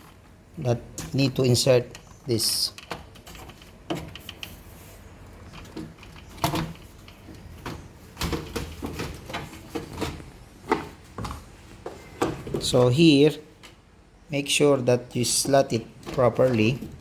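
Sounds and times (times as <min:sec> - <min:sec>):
plastic parts knocking and clicking: 0:05.5 - 0:12.8.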